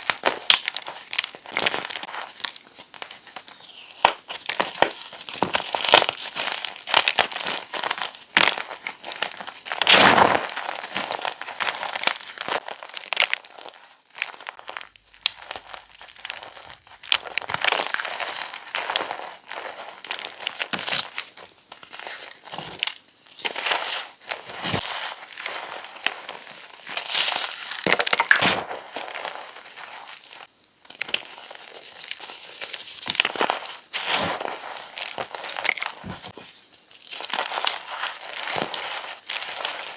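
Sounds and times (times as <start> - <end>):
chalk crunching: 14.6 - 17.7.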